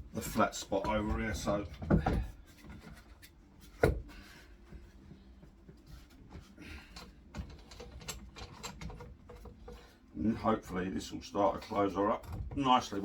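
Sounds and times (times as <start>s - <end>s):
wood and clamps clicking: 7.0s - 9.8s.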